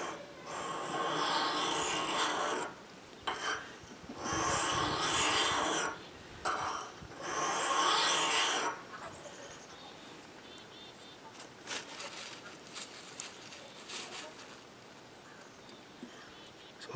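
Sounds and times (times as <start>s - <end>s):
blade scraping on sharpening stone: 0.0s - 8.8s.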